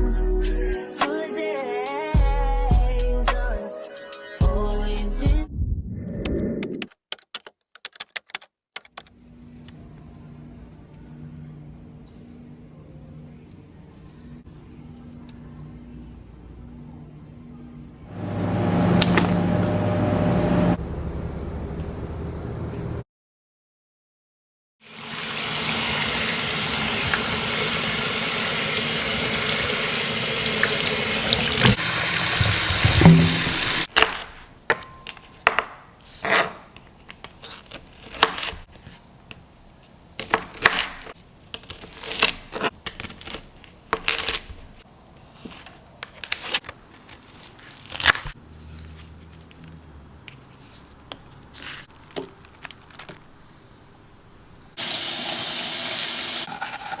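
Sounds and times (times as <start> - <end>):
tap water running into sink: 25.1 - 33.9, 54.8 - 56.5
kitchen items knocking and clattering: 31.6 - 33.8.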